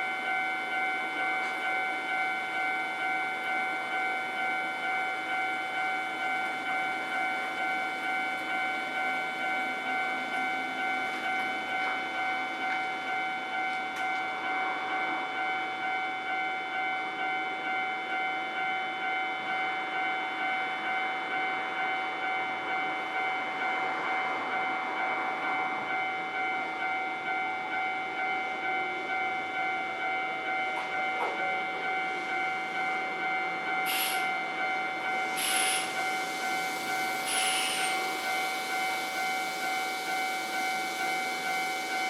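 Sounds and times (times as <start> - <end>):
level crossing warning bell: 0.0 - 42.0.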